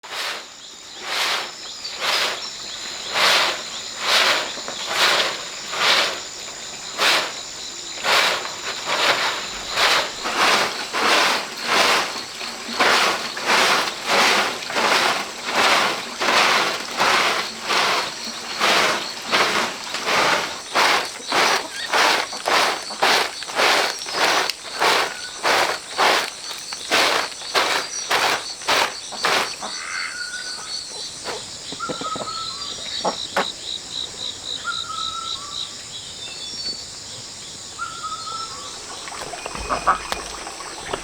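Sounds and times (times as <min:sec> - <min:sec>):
rhythmic scraping strokes: 0:00.0 - 0:29.8.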